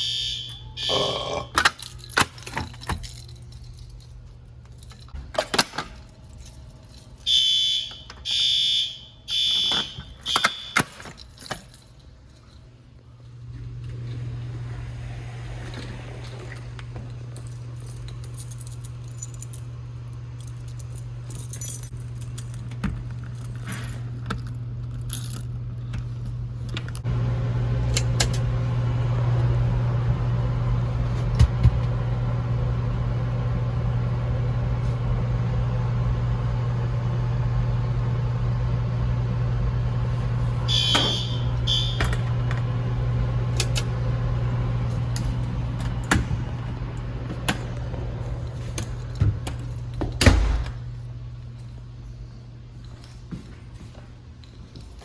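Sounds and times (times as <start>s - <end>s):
low mechanical hum: 0.0s - 55.0s
metallic jangling: 1.6s - 7.3s, 10.2s - 13.0s, 17.2s - 25.6s.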